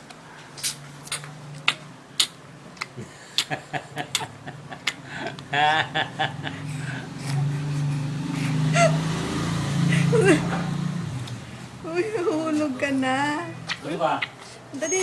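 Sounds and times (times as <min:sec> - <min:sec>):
baby sucking and smacking: 0:00.6 - 0:03.5, 0:13.6 - 0:14.8.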